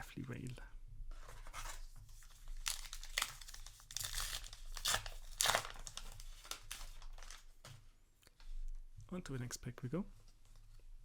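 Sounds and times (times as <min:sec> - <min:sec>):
foil wrapper crinkling and tearing: 0:02.2 - 0:07.5.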